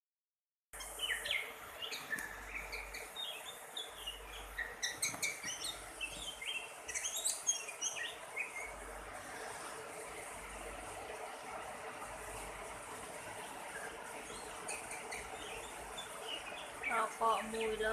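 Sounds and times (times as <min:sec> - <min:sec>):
bird singing whistled notes: 0:00.8 - 0:08.7.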